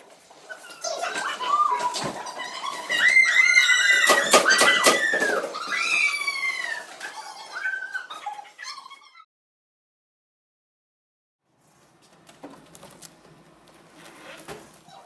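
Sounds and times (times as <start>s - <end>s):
loud high-pitched squeaks: 0.5s - 9.0s.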